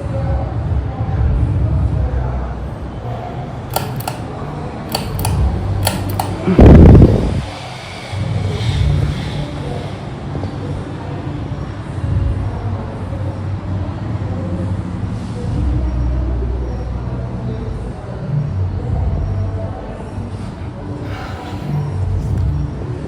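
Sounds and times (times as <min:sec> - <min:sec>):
ceiling fan humming: 0:03.6 - 0:07.4
sharp clicks: 0:03.7 - 0:04.3, 0:04.9 - 0:06.5.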